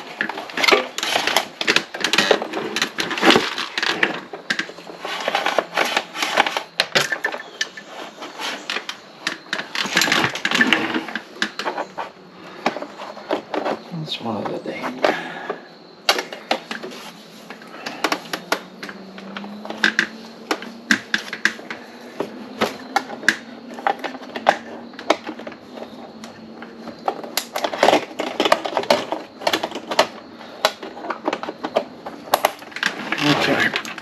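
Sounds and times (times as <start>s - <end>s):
hands clicking plastic and metal parts: 0.0s - 13.8s, 14.4s - 34.0s.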